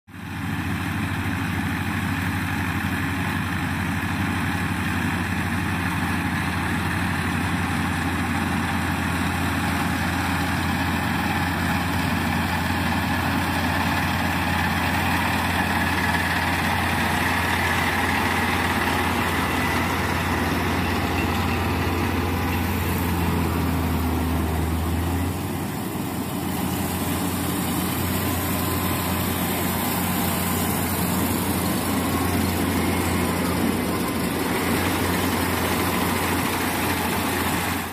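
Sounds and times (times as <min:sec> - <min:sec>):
diesel engine with mechanical clatter: 0:00.1 - 0:37.9.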